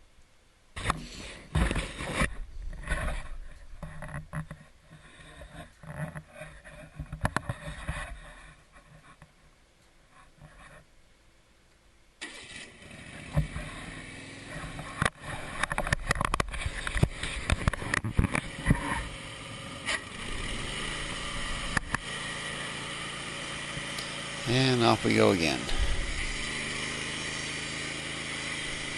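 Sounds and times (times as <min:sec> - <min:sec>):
knocks and scrapes: 0:00.8 - 0:09.4, 0:10.1 - 0:10.9, 0:14.5 - 0:19.2
sawmill engine running: 0:12.2 - 0:15.8, 0:16.6 - 0:28.9
clatters and knocks: 0:14.8 - 0:19.1.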